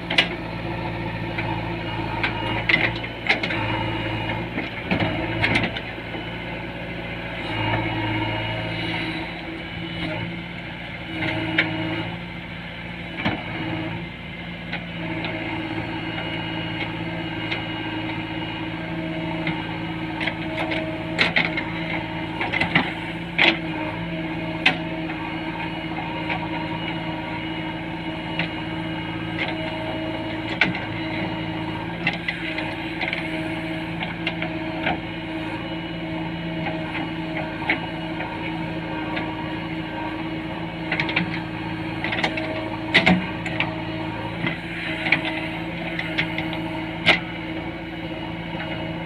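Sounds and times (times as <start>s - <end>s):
digger knocks and clanks: 0.0s - 0.4s, 1.3s - 6.3s, 19.1s - 49.0s
diesel engine running: 0.0s - 49.0s.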